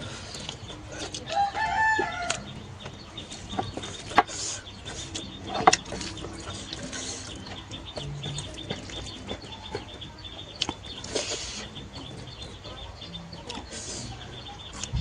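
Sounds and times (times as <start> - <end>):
rooster crowing: 1.3 - 2.6.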